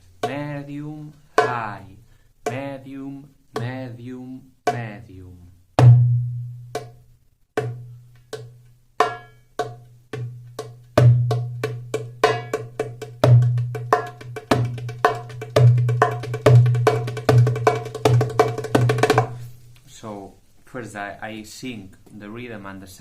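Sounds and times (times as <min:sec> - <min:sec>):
darbuka drumming: 0:01.4 - 0:01.8, 0:05.8 - 0:07.0, 0:07.6 - 0:19.4.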